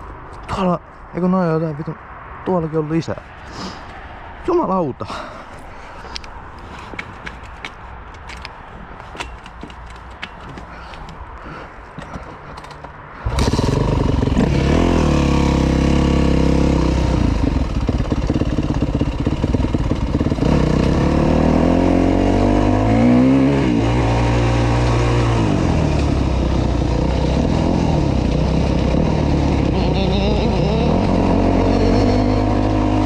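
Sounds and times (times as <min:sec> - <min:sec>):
motorcycle engine revving: 0:13.2 - 0:33.0.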